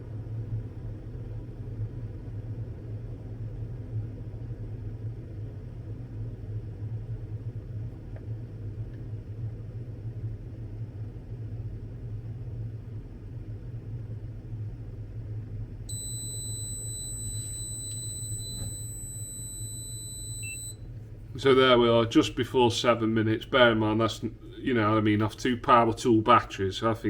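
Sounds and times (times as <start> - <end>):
high-pitched electronic beep: 15.9 - 20.8.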